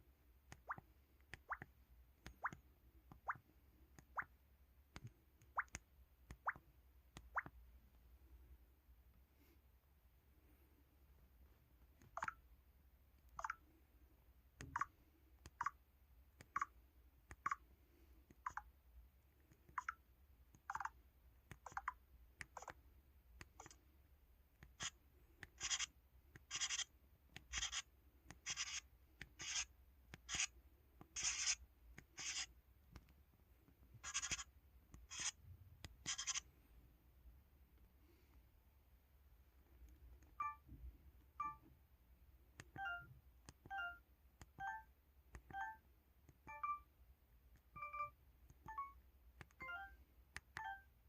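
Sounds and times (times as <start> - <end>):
pencil-scratch keypad sound: 24.7 - 30.5, 31.1 - 32.5, 34.0 - 36.5, 42.6 - 45.8, 46.4 - 46.9.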